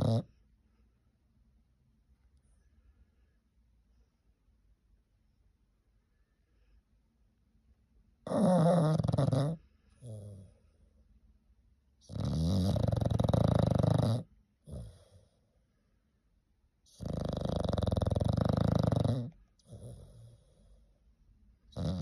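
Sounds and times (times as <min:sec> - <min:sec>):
dog snoring: 0:00.0 - 0:00.4, 0:08.2 - 0:10.6, 0:12.0 - 0:15.4, 0:16.9 - 0:20.8, 0:21.7 - 0:22.0.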